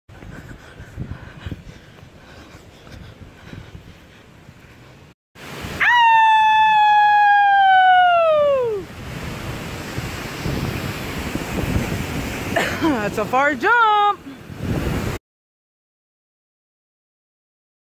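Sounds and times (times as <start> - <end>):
long high howl-like call: 5.8 - 8.9
steady rushing noise: 8.8 - 15.2.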